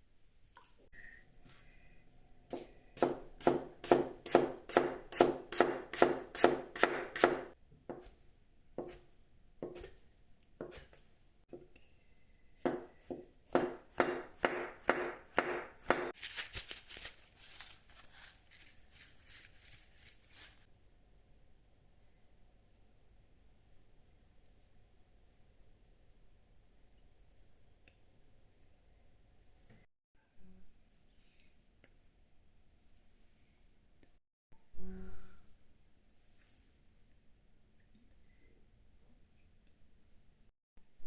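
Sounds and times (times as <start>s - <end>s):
knife chopping on cutting board: 2.5s - 8.2s, 8.8s - 10.0s, 12.6s - 16.1s.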